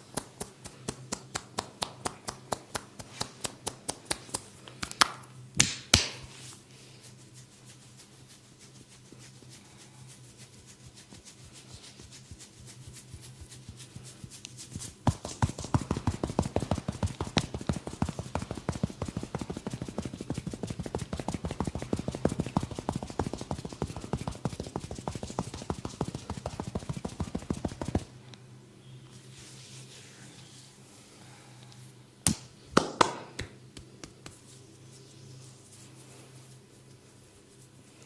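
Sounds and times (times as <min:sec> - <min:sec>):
faint low hum: 0:00.0 - 0:38.0
hands tapping and chopping on body: 0:03.4 - 0:06.2, 0:15.1 - 0:28.0.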